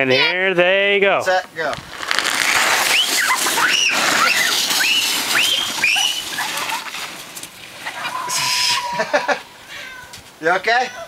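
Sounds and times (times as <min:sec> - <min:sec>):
sled hissing over snow: 0:01.8 - 0:10.0
children squealing: 0:02.5 - 0:07.2, 0:07.8 - 0:10.2.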